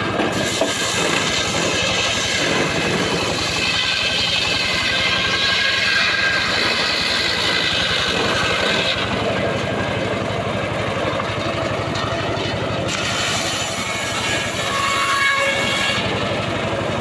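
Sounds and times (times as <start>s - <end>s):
engine running: 0.0s - 17.0s.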